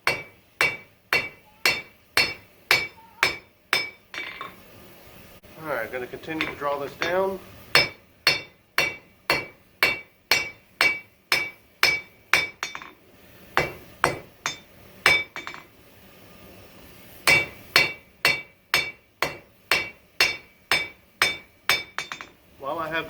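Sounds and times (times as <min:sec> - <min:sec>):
hammer striking steel on anvil: 0:00.0 - 0:04.6, 0:06.2 - 0:13.0, 0:13.6 - 0:15.7, 0:17.2 - 0:22.4.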